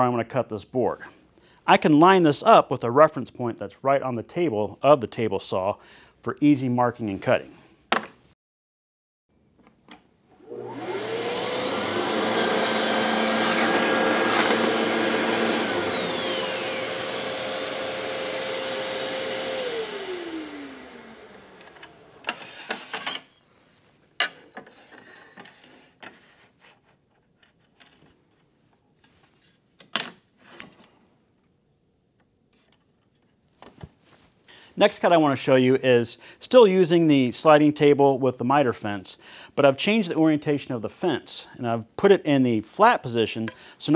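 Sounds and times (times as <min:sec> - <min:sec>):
table saw whine: 0:10.4 - 0:23.4
saw cutting through board: 0:10.6 - 0:23.1.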